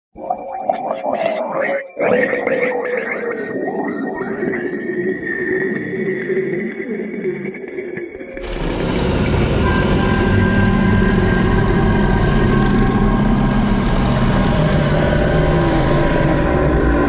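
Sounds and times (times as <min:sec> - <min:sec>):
low tone sliding downward: 0:08.2 - 0:17.0
low rumble drone: 0:08.3 - 0:17.0.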